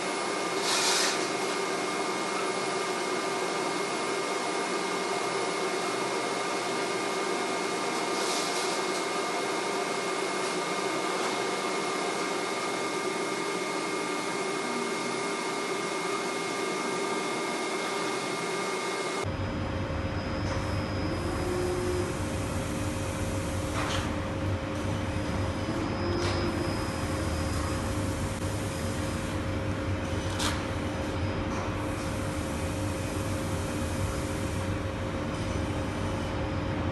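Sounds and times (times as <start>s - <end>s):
welding machine hiss and hum: 0.0s - 19.3s, 20.4s - 36.9s
low rumbling machine noise: 19.2s - 36.9s.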